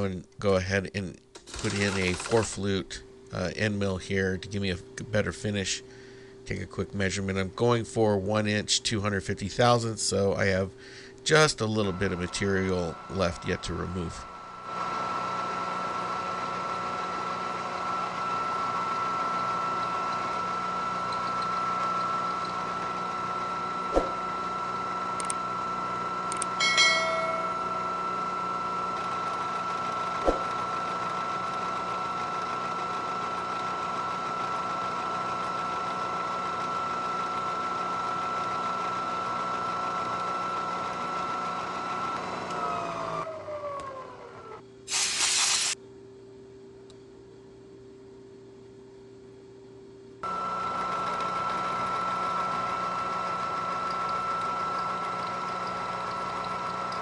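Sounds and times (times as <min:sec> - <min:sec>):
spindle winding down: 0:01.4 - 0:02.8, 0:11.3 - 0:45.8, 0:50.2 - 0:57.0
milling machine whine: 0:01.4 - 0:03.6, 0:09.6 - 0:45.8, 0:50.2 - 0:57.0.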